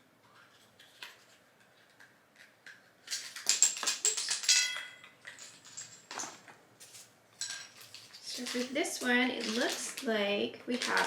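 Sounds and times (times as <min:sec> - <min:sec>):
plastic crinkling and clicking: 0:07.7 - 0:11.0.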